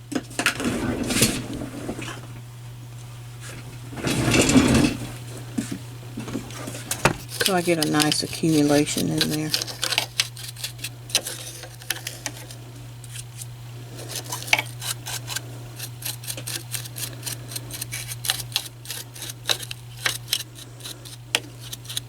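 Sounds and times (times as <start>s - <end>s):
brush scrubbing metal parts: 6.2s - 22.0s.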